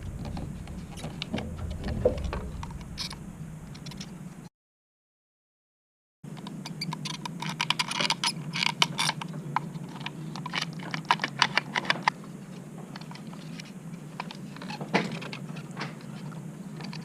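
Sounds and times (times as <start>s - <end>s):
steady low hum: 0.0s - 4.5s.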